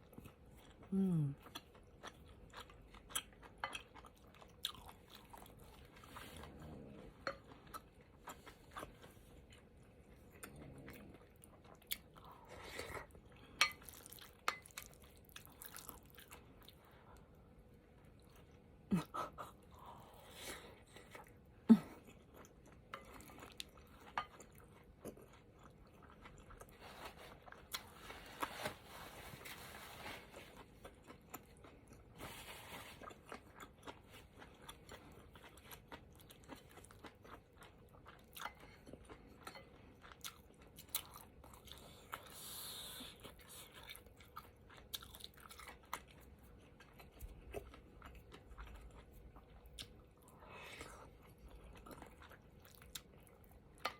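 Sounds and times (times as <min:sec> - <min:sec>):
person chewing: 0:00.0 - 0:53.9.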